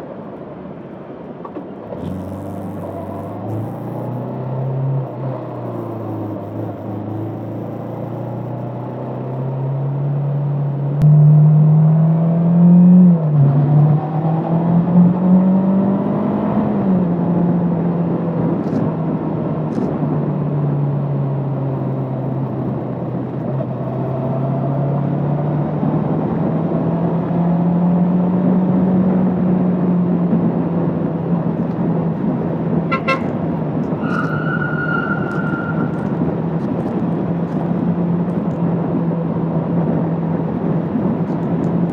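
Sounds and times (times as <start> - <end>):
motorcycle engine accelerating: 2.0 - 39.3
horn sounding: 32.9 - 36.3.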